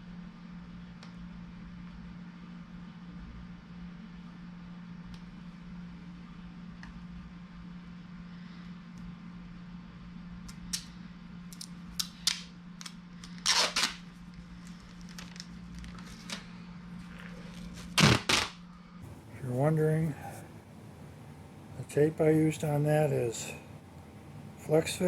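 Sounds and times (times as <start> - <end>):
steady low hum: 0.0 - 25.0
crackling rasps of ductwork: 11.5 - 25.0.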